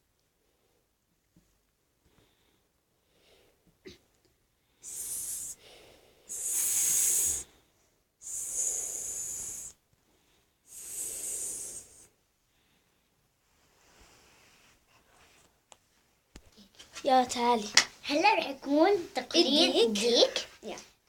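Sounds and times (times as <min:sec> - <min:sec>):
person hissing like a snake: 0:04.8 - 0:07.6, 0:08.2 - 0:09.8, 0:10.7 - 0:12.1.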